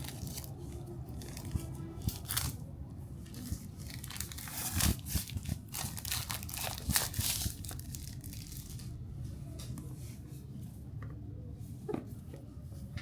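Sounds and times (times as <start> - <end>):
packaging crinkling and tearing: 0.0 - 2.6, 3.3 - 8.9.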